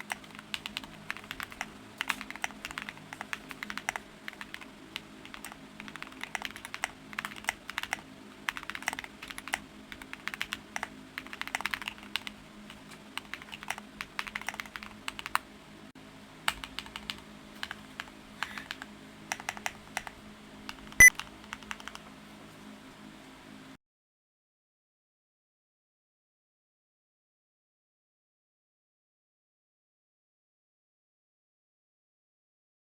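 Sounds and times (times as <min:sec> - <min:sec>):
mechanical keyboard typing: 0:00.0 - 0:15.4, 0:16.5 - 0:20.1, 0:20.7 - 0:22.0.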